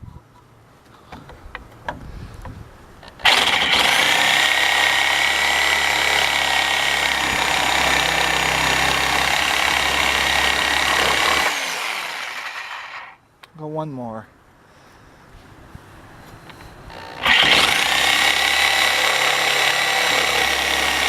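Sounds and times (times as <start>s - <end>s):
reciprocating saw cutting wood: 3.1s - 13.2s, 16.9s - 21.0s.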